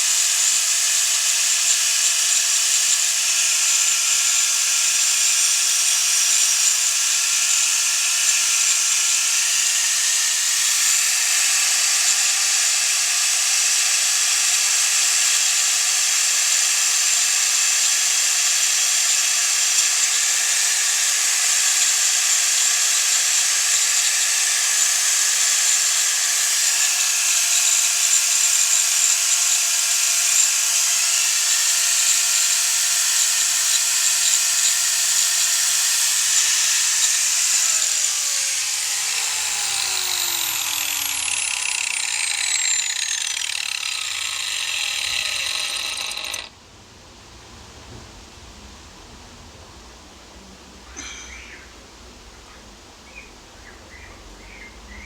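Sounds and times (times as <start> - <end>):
power tool motor whining: 31.6 - 46.5.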